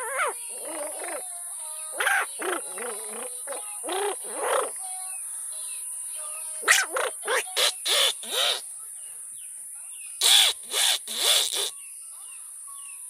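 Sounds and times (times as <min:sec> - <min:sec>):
boy imitating animal call: 0:00.0 - 0:01.3, 0:01.9 - 0:04.8, 0:06.6 - 0:08.6, 0:10.2 - 0:11.7.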